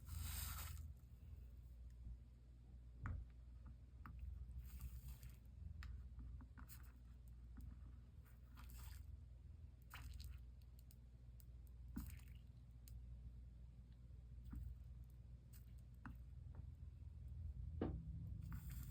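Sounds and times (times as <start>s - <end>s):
faint rustling and scraping: 0.0s - 1.6s, 18.3s - 18.9s
low steady hum: 0.0s - 18.9s.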